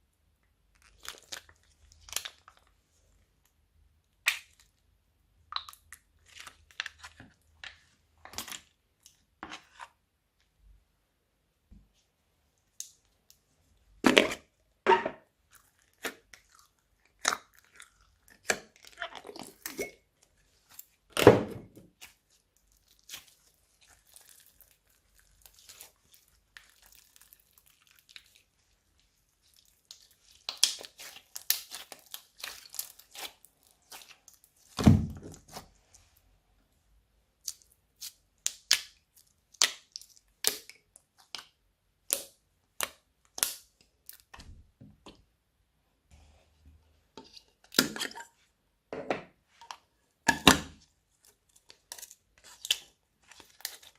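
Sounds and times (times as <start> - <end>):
slime squished by hand: 0.7 - 2.7, 22.0 - 35.7.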